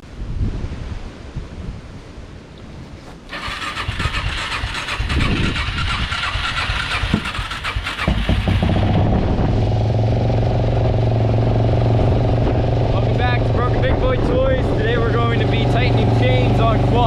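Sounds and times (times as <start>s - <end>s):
quad engine cranking: 2.6s - 9.1s
quad engine idling: 2.8s - 13.8s.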